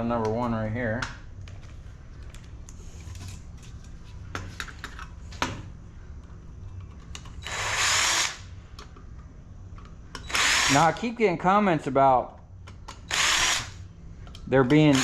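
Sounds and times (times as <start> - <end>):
cordless drill spinning: 7.4 - 8.4, 10.3 - 11.0, 13.1 - 13.7.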